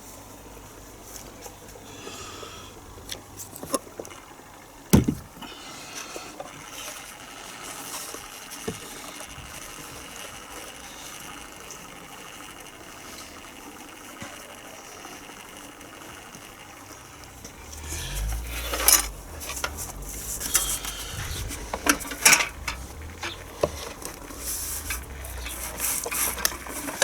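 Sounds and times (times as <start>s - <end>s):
loud thump: 5.0s - 5.3s
low hum: 17.2s - 26.7s
sharp clicks and knocks: 17.4s - 27.0s.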